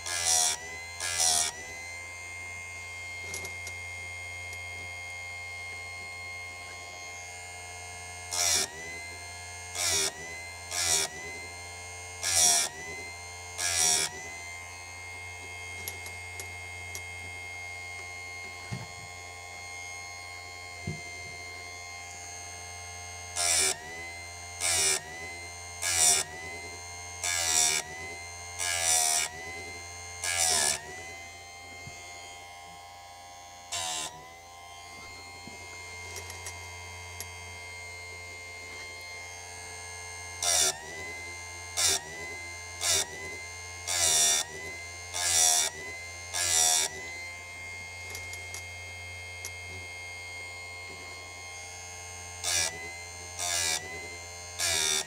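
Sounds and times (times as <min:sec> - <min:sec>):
chain grinder grinding chain teeth: 0:03.1 - 0:03.8, 0:15.4 - 0:17.1, 0:33.7 - 0:37.7, 0:48.0 - 0:48.7.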